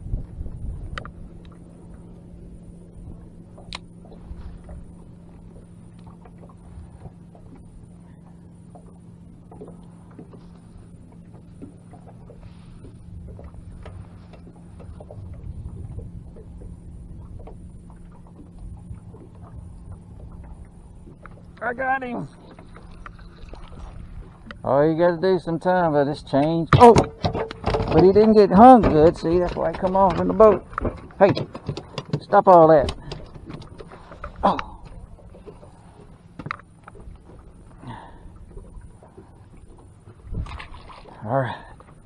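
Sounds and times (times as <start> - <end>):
low rumble: 0.0 - 31.6
steady low hum: 0.0 - 42.0.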